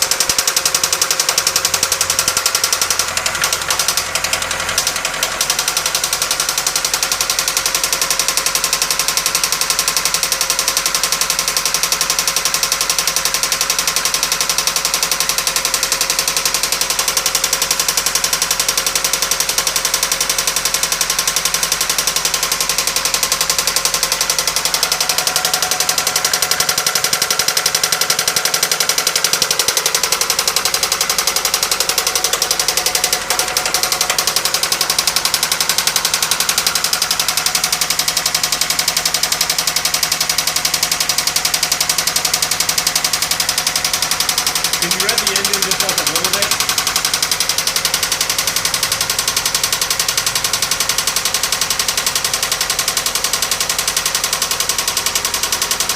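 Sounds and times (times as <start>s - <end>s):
car engine knocking: 0.0s - 55.9s.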